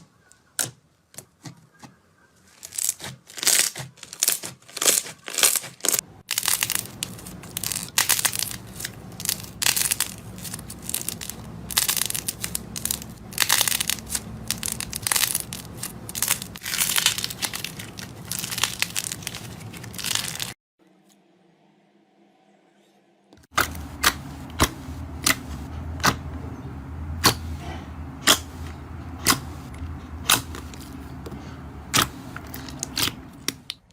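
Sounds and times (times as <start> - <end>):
slime crackling and crunching: 2.5 - 20.6, 29.2 - 31.2, 31.9 - 33.9.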